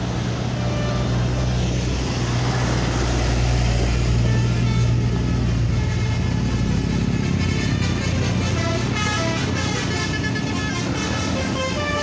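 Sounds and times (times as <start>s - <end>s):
musical bus horn melody: 0.4s - 1.4s, 3.8s - 12.0s.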